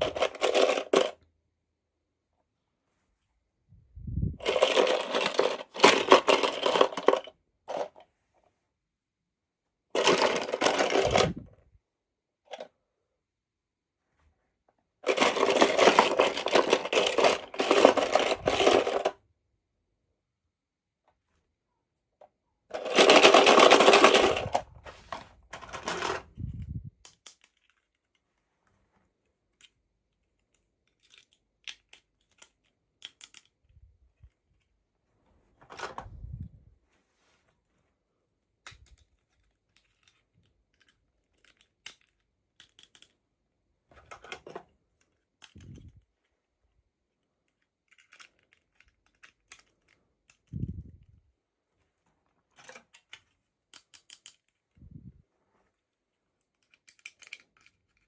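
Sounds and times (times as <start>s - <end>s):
small plastic clicks and taps: 52.6s - 54.6s.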